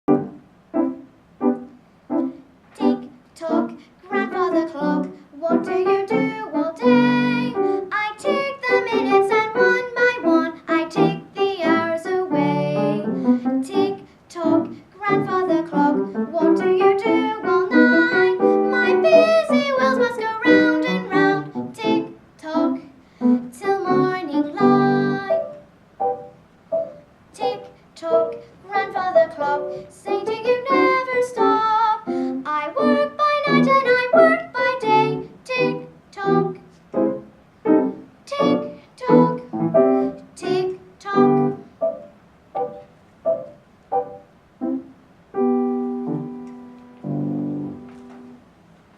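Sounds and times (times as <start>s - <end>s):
girl singing: 2.2s - 25.6s, 27.3s - 41.7s
girl breathing: 3.7s - 4.1s, 7.6s - 7.9s, 13.1s - 15.0s, 22.9s - 23.5s, 32.1s - 32.4s, 39.8s - 40.3s.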